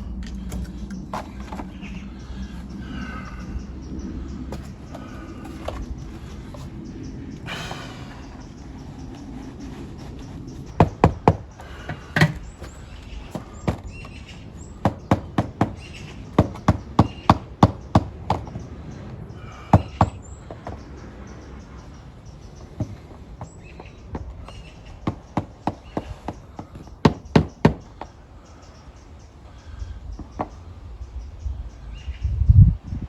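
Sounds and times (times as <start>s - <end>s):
hard objects knocking: 4.4s - 6.8s, 10.7s - 18.7s, 19.5s - 21.4s, 22.6s - 28.2s.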